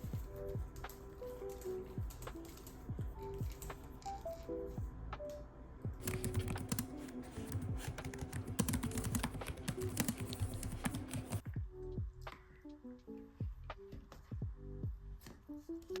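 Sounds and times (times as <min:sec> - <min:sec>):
keyboard typing: 0:00.0 - 0:04.5, 0:06.0 - 0:11.4
soft background music: 0:00.0 - 0:16.0.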